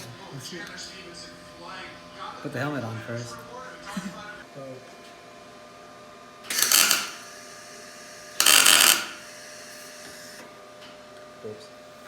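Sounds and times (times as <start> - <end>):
welder arcing crackle: 6.5 - 10.4.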